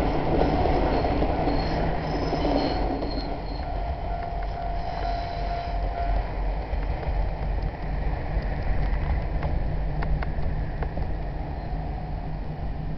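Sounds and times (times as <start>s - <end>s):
low rumble of train: 0.0s - 12.9s
wind buffeting microphone: 0.0s - 12.9s
crossing alarm pulsing tone: 0.4s - 6.5s
high steady squeal: 0.4s - 6.8s, 11.4s - 12.6s.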